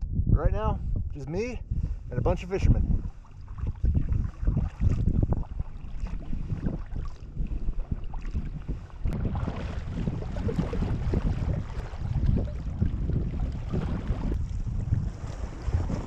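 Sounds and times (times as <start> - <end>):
wind buffeting microphone: 0.0 - 16.0
water sounds of kayak moving: 1.8 - 16.0.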